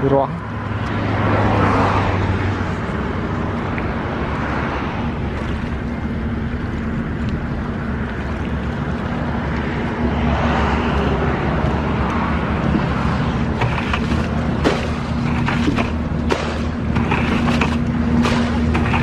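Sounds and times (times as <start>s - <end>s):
broad rushing noise: 0.4s - 19.0s
sharp knocks or splashes: 12.6s - 19.0s.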